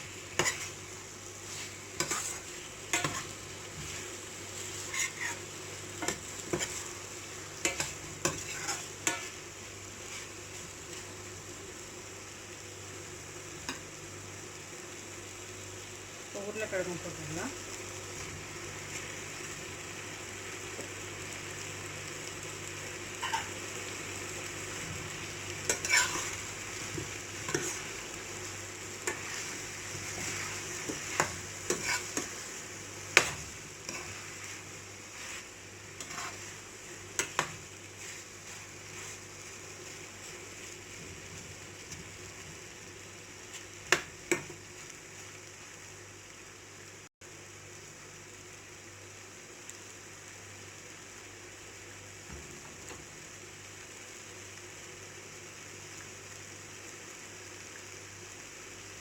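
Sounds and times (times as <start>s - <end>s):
food sizzling in a pan: 0.0s - 59.0s
spoon knocking and scraping pan: 0.3s - 0.8s, 1.5s - 4.1s, 6.0s - 6.9s, 7.6s - 9.3s, 25.7s - 27.8s, 29.0s - 32.5s, 33.1s - 39.3s, 43.9s - 44.6s.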